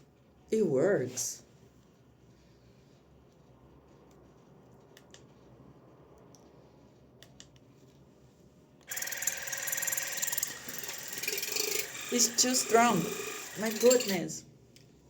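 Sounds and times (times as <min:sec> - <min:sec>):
water flosser pump buzzing: 0:08.9 - 0:14.3.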